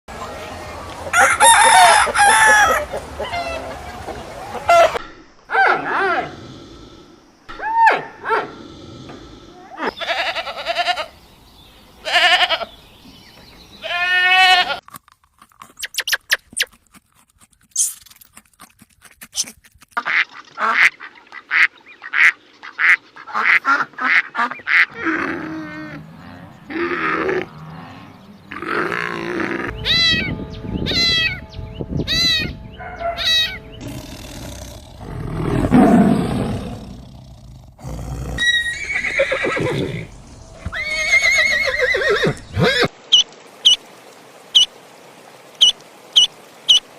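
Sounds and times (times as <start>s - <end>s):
farm animals calling: 1.2s - 6.3s, 9.6s - 11.2s, 12.0s - 12.8s, 13.8s - 14.8s, 19.4s - 36.8s
music: 29.7s - 33.8s.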